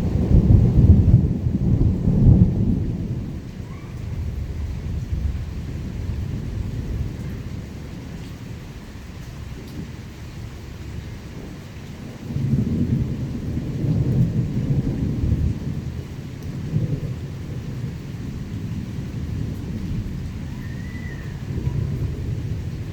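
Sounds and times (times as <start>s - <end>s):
steady rain: 0.0s - 22.9s
thunder rumbling: 0.0s - 22.9s.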